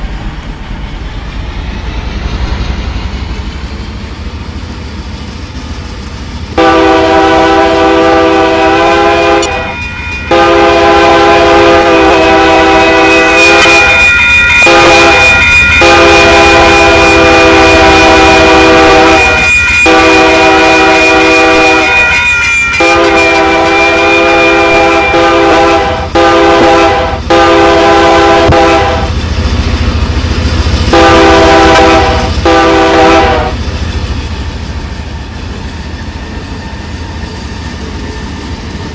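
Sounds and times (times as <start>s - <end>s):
passing train rumble: 0.0s - 38.9s
locomotive air horn blasts: 6.6s - 29.1s, 30.9s - 33.6s.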